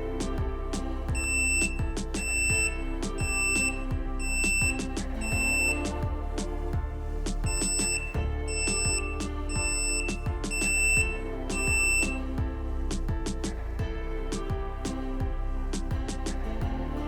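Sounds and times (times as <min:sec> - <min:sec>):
background music with beat: 0:00.0 - 0:17.0
high-pitched buzzer beeps: 0:01.2 - 0:05.9, 0:07.5 - 0:12.2.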